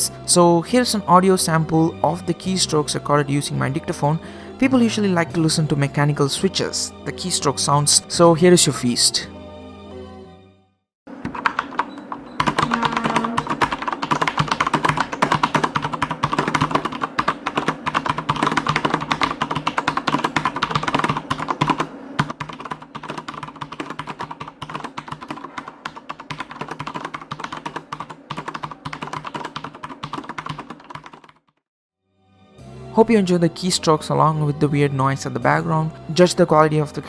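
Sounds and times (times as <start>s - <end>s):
mechanical keyboard typing: 11.2s - 31.6s.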